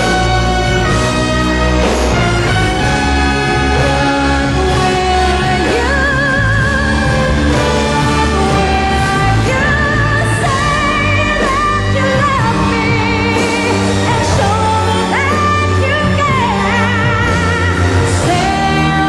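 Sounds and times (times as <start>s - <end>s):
band playing: 0.0s - 19.0s
woman singing pop song: 3.7s - 19.0s.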